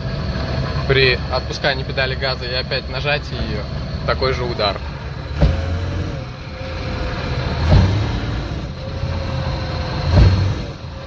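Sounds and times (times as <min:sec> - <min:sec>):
car engine running: 0:00.0 - 0:11.0
heavy knocks from car rear: 0:05.4 - 0:05.8, 0:07.7 - 0:08.1, 0:10.1 - 0:10.6.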